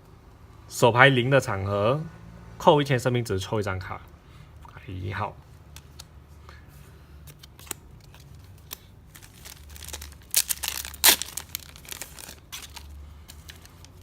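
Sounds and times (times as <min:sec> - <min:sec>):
foil wrapper crinkling: 0:07.6 - 0:14.0
foil wrapper tearing: 0:08.7 - 0:14.0.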